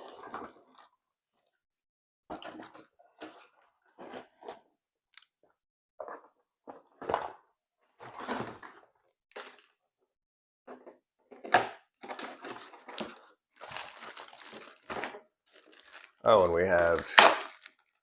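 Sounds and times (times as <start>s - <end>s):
packaging rustling: 12.0s - 17.9s.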